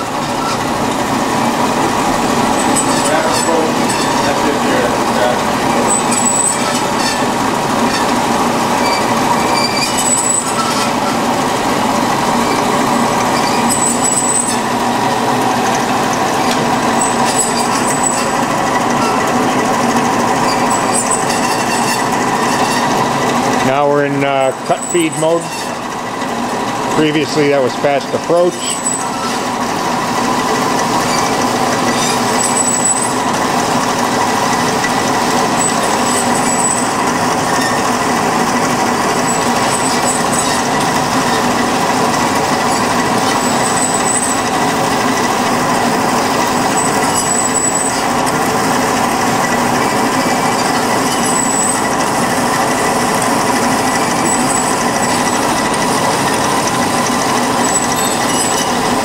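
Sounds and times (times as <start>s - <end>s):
band saw blade sawing: 0.0s - 59.0s
faint high squeak: 8.8s - 11.2s, 13.3s - 14.6s, 17.0s - 18.4s, 28.6s - 29.4s, 46.8s - 48.0s, 57.6s - 58.8s.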